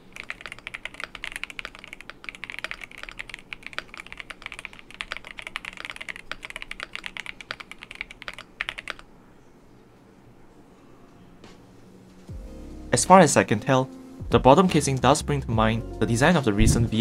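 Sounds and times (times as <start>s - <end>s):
mechanical keyboard typing: 0.0s - 9.0s.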